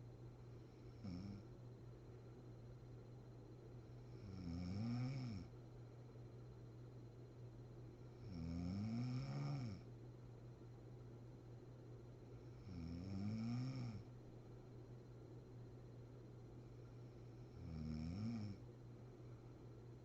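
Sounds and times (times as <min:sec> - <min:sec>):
woman snoring: 0:00.9 - 0:01.4, 0:04.1 - 0:05.5, 0:08.2 - 0:09.9, 0:12.6 - 0:14.1, 0:17.5 - 0:18.6.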